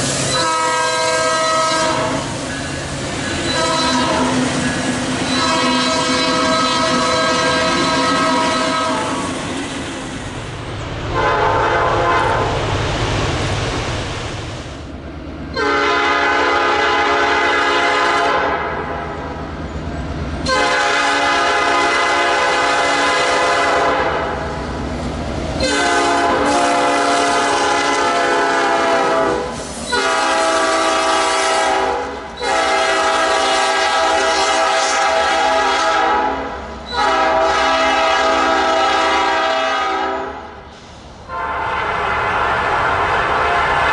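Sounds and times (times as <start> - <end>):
low train rumble: 0.0 - 43.9
locomotive horn blasts: 0.3 - 2.3, 3.4 - 4.4, 5.2 - 9.3, 11.1 - 12.6, 15.5 - 18.9, 20.4 - 24.4, 25.6 - 40.4, 41.3 - 43.9.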